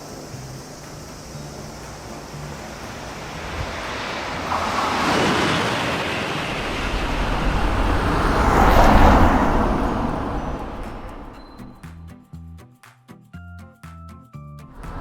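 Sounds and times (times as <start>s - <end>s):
music: 0.0s - 4.5s, 10.3s - 15.0s
train passing by: 0.0s - 12.0s, 14.8s - 15.0s.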